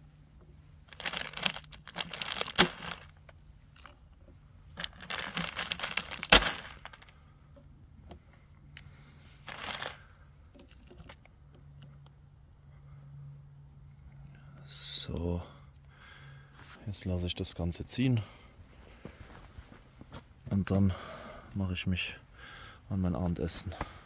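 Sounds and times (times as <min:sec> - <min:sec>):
plastic wrapper crinkling: 0:00.9 - 0:04.1, 0:04.7 - 0:07.1, 0:09.4 - 0:10.0
dry noodles breaking: 0:00.9 - 0:07.1.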